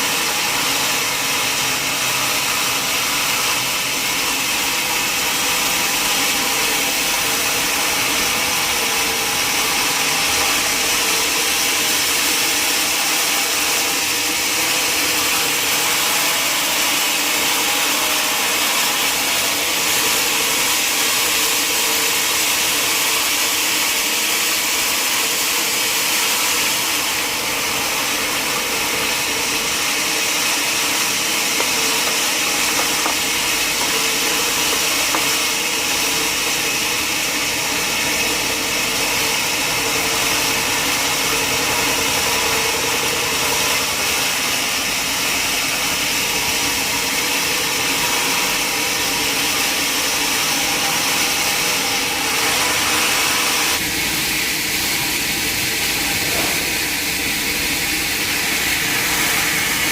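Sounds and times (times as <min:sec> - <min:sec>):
saw blade cutting log: 0:00.0 - 0:53.8, 0:54.4 - 0:59.9.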